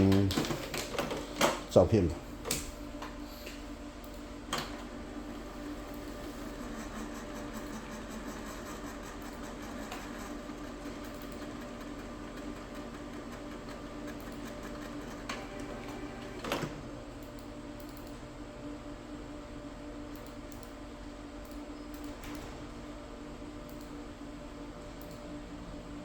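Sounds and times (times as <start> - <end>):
printer whirring: 0.0 - 3.2, 4.3 - 17.3
printer clicks: 5.8 - 16.8.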